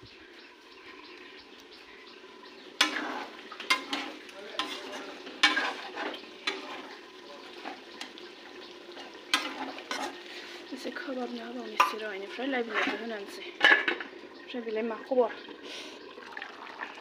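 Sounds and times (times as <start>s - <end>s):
food sizzling in a pan: 2.2s - 17.0s
spatula scraping and stirring: 2.8s - 10.7s.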